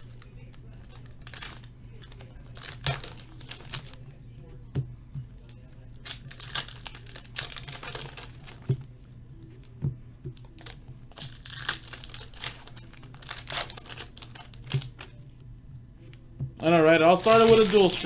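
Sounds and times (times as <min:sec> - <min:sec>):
card wrappers crinkling and tearing: 0:00.0 - 0:04.2, 0:05.4 - 0:08.9, 0:10.4 - 0:15.2, 0:17.1 - 0:18.0.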